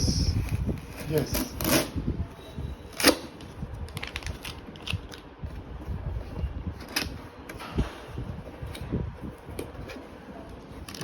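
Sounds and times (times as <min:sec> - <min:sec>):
cardboard packaging being opened: 0:02.9 - 0:05.3.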